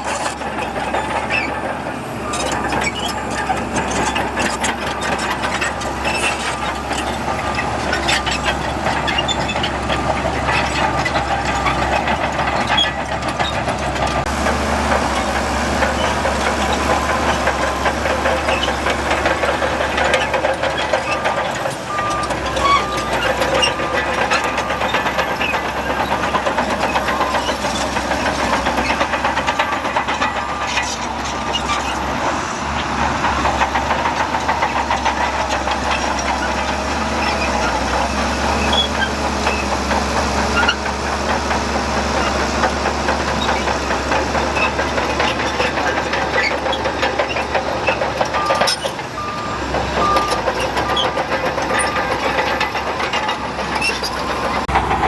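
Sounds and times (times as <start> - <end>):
heavy diesel machinery running: 0.0 - 55.0
reversing alarm beeps: 49.2 - 52.2.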